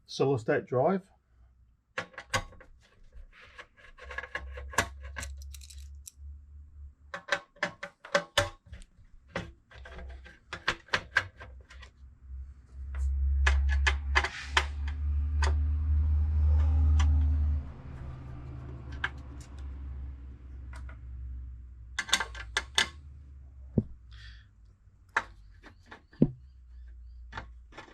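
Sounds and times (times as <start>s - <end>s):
computer hardware clicking and clattering: 3.8s - 6.2s.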